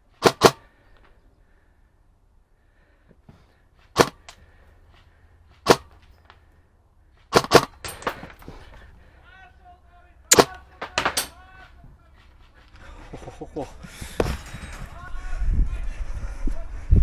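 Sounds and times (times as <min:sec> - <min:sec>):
airsoft gun shots: 0:00.2 - 0:00.7, 0:04.0 - 0:04.4, 0:05.6 - 0:06.0, 0:07.3 - 0:08.3, 0:10.3 - 0:11.4.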